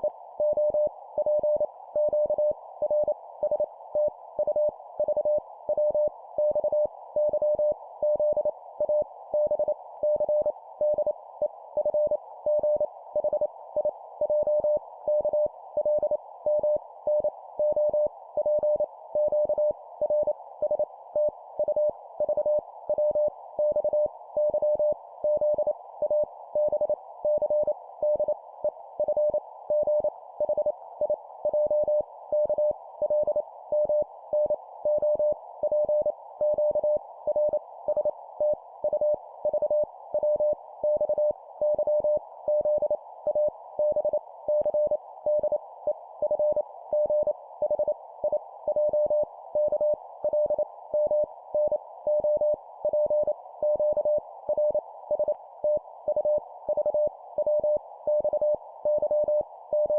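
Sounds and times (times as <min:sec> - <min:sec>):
morse code beeps: 0:48.7 - 0:59.9.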